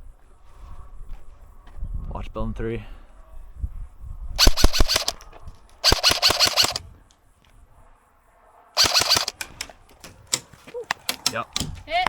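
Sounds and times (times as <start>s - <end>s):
airsoft rifle full-auto bursts: 4.4s - 5.2s, 5.8s - 6.8s, 8.8s - 9.4s.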